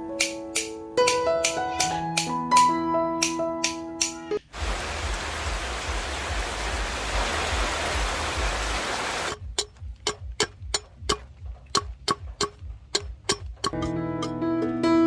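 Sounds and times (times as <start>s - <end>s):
rushing like running water: 4.4s - 9.4s.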